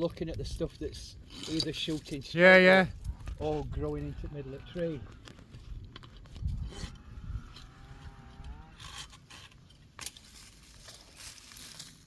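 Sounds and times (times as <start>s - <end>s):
branches being cut: 6.1s - 12.0s.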